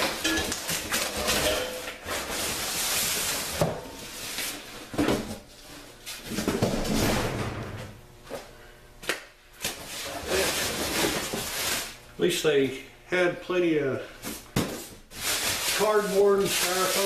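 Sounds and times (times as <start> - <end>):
packing rustling and scraping: 0.0 - 5.4, 9.7 - 12.0, 14.2 - 17.0.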